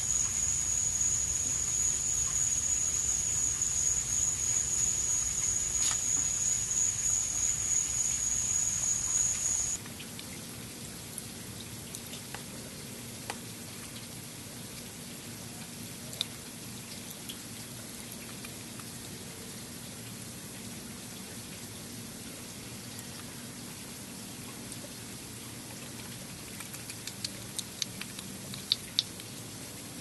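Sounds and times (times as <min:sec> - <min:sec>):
cricket drone: 0:00.0 - 0:09.8
small ticks and clicks: 0:00.1 - 0:10.3, 0:25.7 - 0:29.4.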